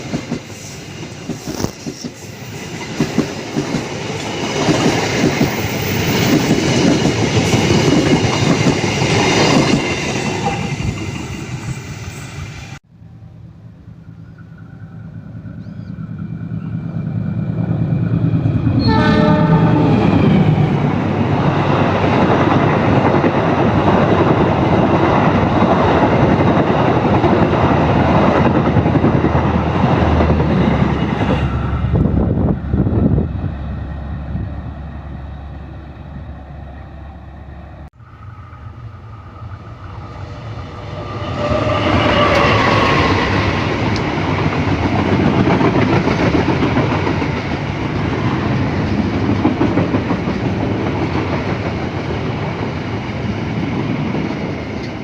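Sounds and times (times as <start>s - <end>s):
train passing: 0.0s - 55.0s
train horn: 18.7s - 20.3s.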